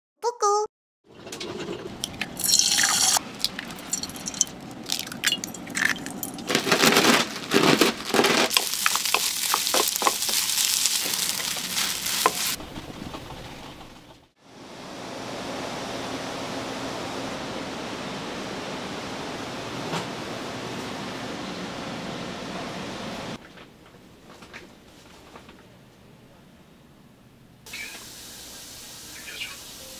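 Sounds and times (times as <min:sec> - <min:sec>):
utensils and dishes clattering: 0:01.1 - 0:12.6
food sizzling: 0:02.1 - 0:06.6, 0:08.5 - 0:12.6, 0:27.7 - 0:29.9.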